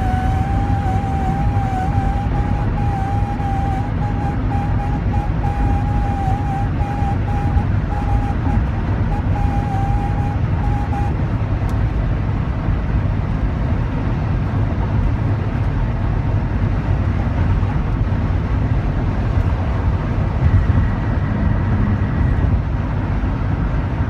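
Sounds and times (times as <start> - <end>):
faint high whine: 0.0 - 11.5
minivan engine rumble: 0.0 - 24.0.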